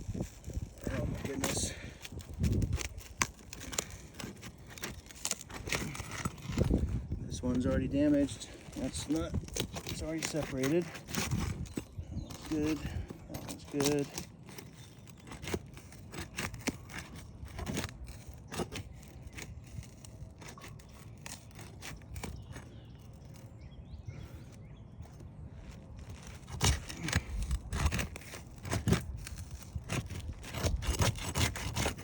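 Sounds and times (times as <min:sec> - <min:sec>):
metal tool scraping shingles: 0:00.0 - 0:23.6, 0:25.6 - 0:32.0.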